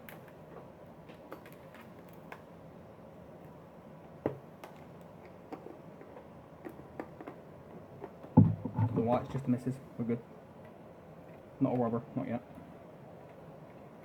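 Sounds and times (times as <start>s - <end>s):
loud knock: 8.4s - 9.4s.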